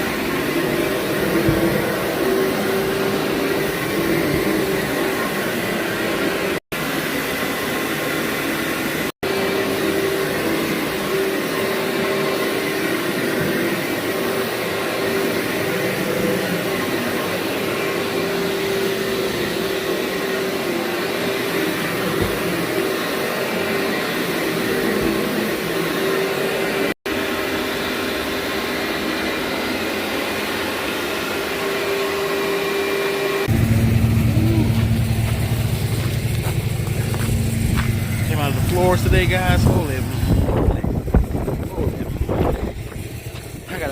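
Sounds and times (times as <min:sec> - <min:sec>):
vacuum cleaner on carpet: 0:00.0 - 0:43.9
deep engine-like drone: 0:33.4 - 0:43.9.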